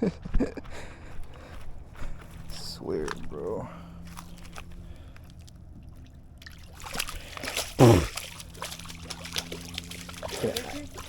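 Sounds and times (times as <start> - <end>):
water splashing from thrashing fish: 4.0 - 11.0.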